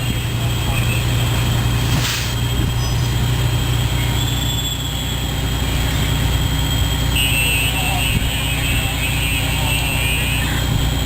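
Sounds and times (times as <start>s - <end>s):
heavy vehicle engine idling: 0.0s - 11.0s
air hiss: 1.8s - 3.2s.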